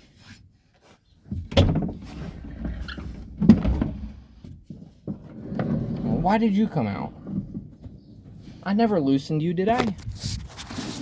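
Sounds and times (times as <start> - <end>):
clunks and thumps in truck cab: 1.1 - 8.6.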